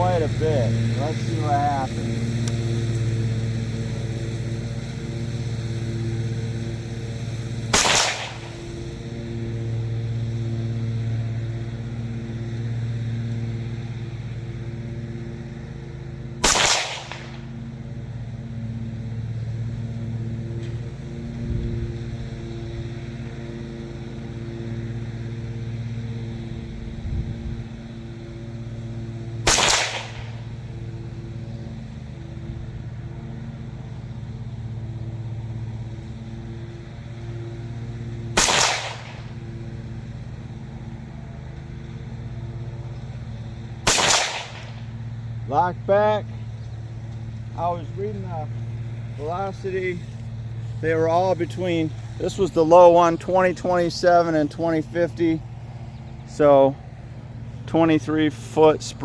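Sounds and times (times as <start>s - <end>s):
lawn mower engine droning: 0.0s - 59.0s
rifle shots: 7.7s - 8.7s, 16.4s - 17.5s, 29.4s - 30.5s, 38.4s - 39.4s, 43.8s - 44.9s.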